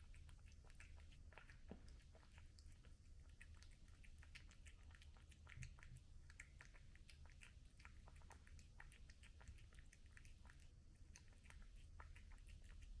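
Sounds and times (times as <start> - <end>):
cat chewing food: 0.0 - 13.0.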